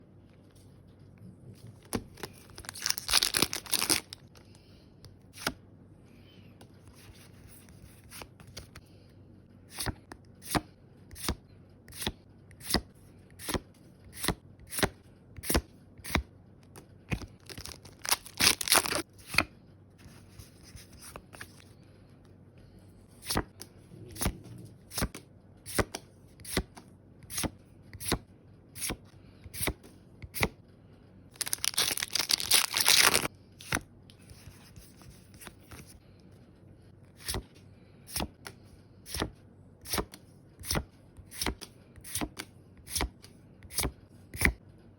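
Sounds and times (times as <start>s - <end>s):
foil packs being torn open: 2.1s - 4.3s, 17.4s - 19.0s, 31.4s - 33.3s.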